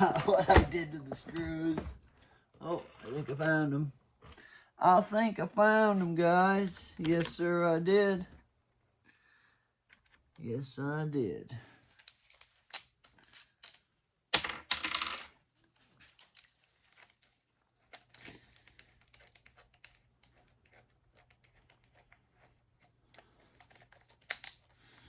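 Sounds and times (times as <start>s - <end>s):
metal screws and tools clicking: 17.8s - 24.8s.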